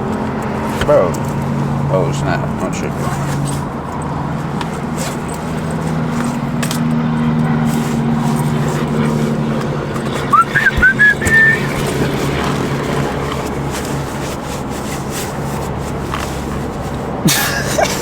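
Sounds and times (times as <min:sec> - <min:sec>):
high rising whistle-like chirps: 0:10.3 - 0:11.6.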